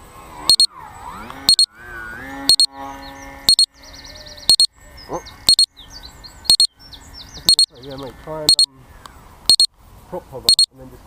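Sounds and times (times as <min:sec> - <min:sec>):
electronic beeper double beeps: 0:00.5 - 0:00.7, 0:01.4 - 0:01.7, 0:02.5 - 0:02.8, 0:03.5 - 0:03.7, 0:04.5 - 0:04.7, 0:05.5 - 0:05.7, 0:06.5 - 0:06.7, 0:07.5 - 0:07.7, 0:08.5 - 0:08.7, 0:09.5 - 0:09.7, 0:10.5 - 0:10.7.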